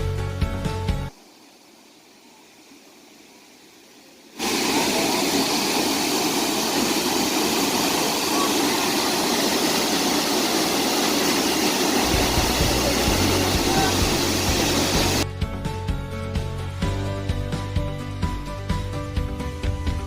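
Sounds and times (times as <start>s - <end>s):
waterfall roaring: 4.4s - 15.2s
low rumble: 12.0s - 15.2s.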